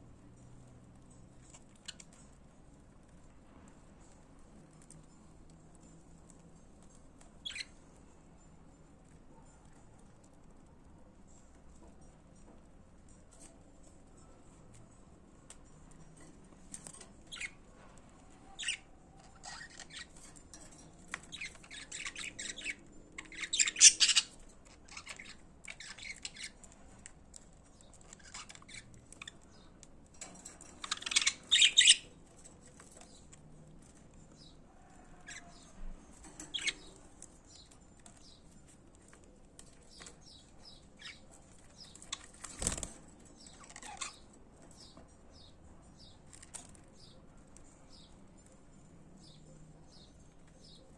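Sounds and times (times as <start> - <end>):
budgerigars chirping and chattering: 7.4 - 7.7, 17.3 - 17.6, 18.6 - 20.2, 21.2 - 27.0, 27.9 - 29.4, 30.7 - 32.2, 36.4 - 38.4, 39.9 - 45.0.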